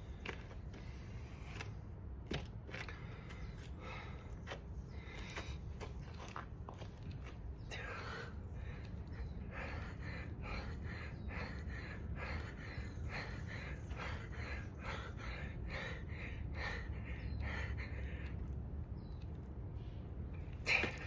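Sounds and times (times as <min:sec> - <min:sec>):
fast rhythmic panting: 0:08.3 - 0:19.0.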